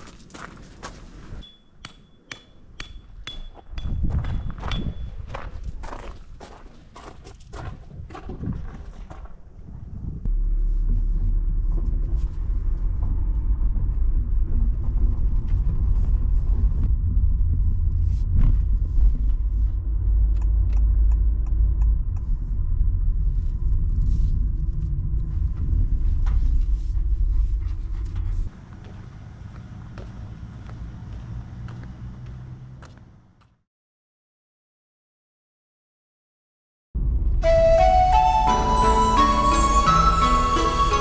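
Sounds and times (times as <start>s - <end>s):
loud low rumble: 9.9s - 31.2s, 37.0s - 41.0s.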